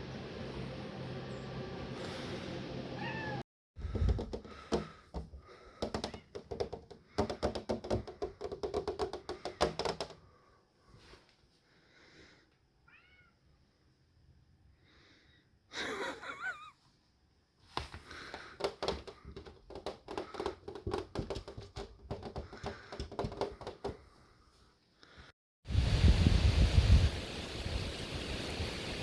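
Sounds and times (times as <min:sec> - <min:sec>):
cat meowing: 0:03.0 - 0:03.4, 0:12.8 - 0:13.4.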